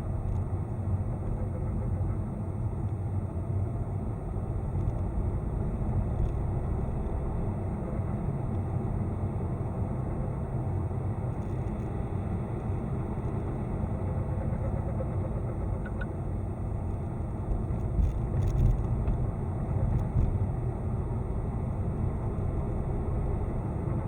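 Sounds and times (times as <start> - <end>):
car engine rumbling: 0.0 - 24.0.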